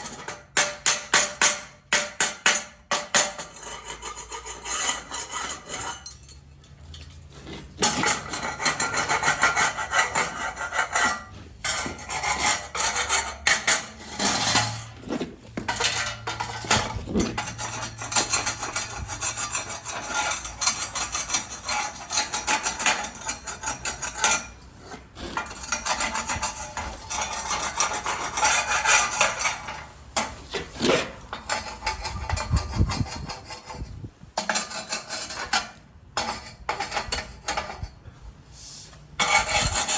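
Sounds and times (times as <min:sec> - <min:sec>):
tools scraping and rasping: 0:00.0 - 0:39.9
metal clinking on metal: 0:05.0 - 0:08.8.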